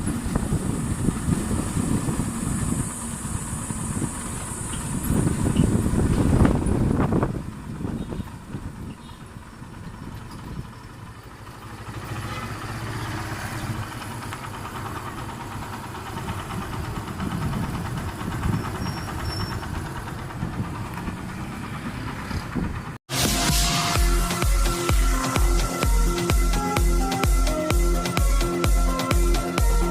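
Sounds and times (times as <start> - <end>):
motorcycle engine exhaust: 0.0 - 23.0.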